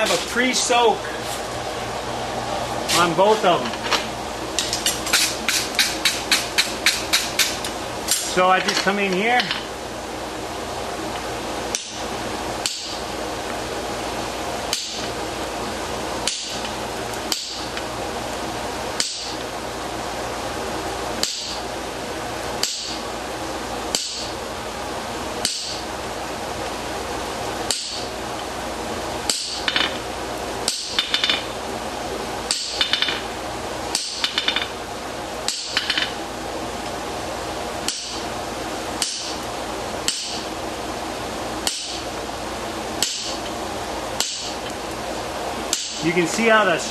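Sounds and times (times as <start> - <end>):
steady background hum: 0.0 - 46.9
hammer striking hot steel: 4.6 - 8.3, 12.6 - 13.0, 14.7 - 15.1, 16.2 - 16.6, 17.3 - 17.8, 19.0 - 19.4, 21.2 - 21.6, 22.6 - 23.0, 23.9 - 24.3, 25.4 - 25.8, 27.7 - 28.1, 29.3 - 29.9, 30.7 - 31.5, 32.5 - 33.2, 33.9 - 34.7, 35.5 - 36.1, 37.8 - 38.2, 39.0 - 39.4, 40.1 - 40.4, 41.6 - 42.0, 43.0 - 43.4, 44.2 - 44.6, 45.7 - 46.0.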